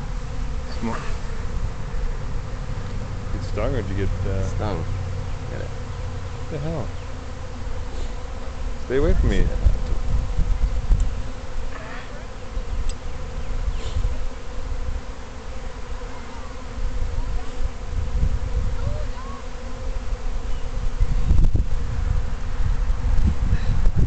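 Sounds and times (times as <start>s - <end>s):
bee swarm buzzing: 0.0s - 24.0s
bees whining flying by: 0.0s - 24.0s.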